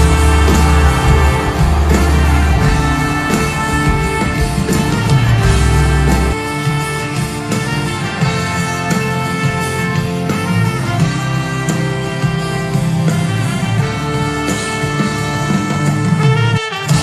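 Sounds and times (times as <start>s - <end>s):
instrumental music with heavy bass: 0.0s - 17.0s.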